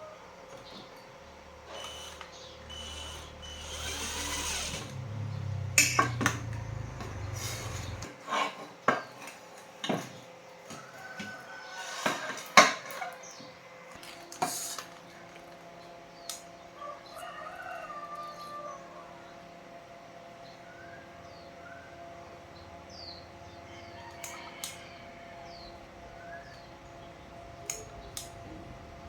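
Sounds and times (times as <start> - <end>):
low hum: 2.6 - 8.1, 25.5 - 29.0.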